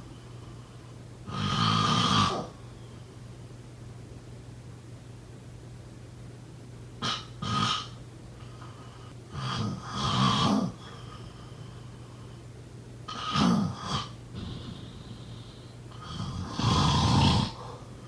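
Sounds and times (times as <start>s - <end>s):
steady low hum: 0.0s - 18.0s
person snoring: 9.4s - 10.8s, 13.1s - 17.9s.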